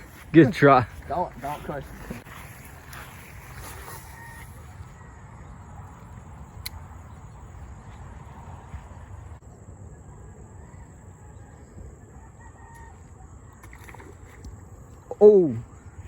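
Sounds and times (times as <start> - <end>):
wind rumbling on microphone: 0.0 - 16.0.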